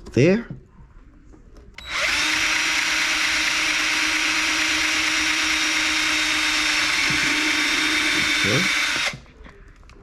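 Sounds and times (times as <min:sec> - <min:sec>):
electric drill running: 0:01.8 - 0:09.2.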